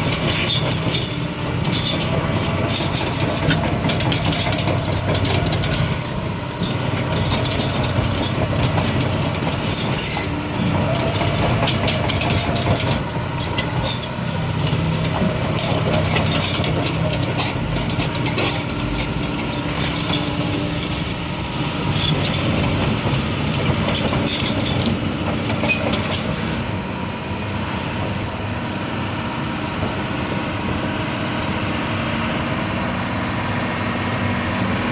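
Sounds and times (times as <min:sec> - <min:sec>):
metallic clanks and clicks: 0:00.0 - 0:26.6
excavator diesel engine running: 0:00.0 - 0:34.9.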